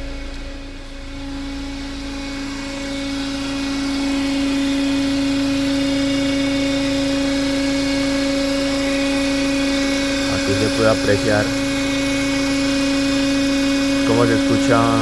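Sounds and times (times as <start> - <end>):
car engine droning: 0.0 - 15.0.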